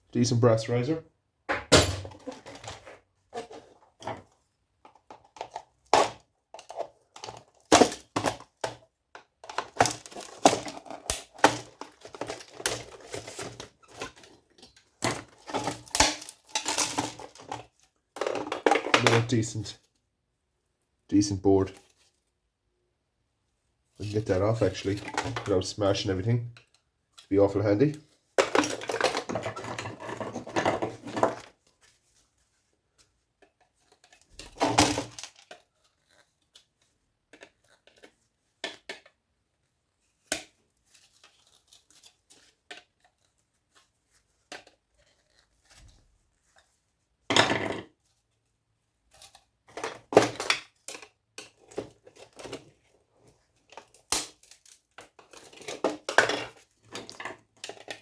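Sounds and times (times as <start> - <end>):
metal and plastic parts clattering: 1.7 - 19.4, 24.0 - 31.6, 33.5 - 36.3, 49.1 - 58.0.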